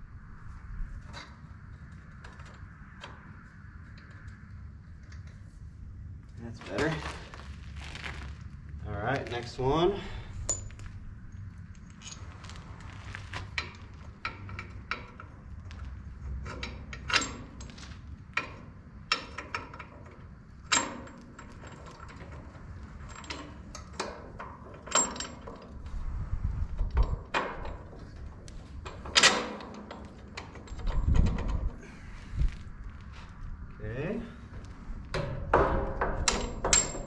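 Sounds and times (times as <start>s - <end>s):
metal tools clinking: 10.0s - 10.9s.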